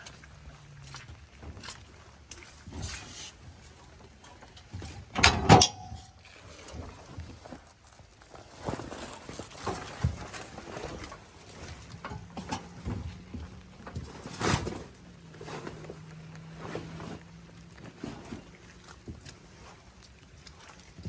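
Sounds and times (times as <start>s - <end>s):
footsteps squelching in mud: 0.0s - 3.2s, 7.4s - 21.0s.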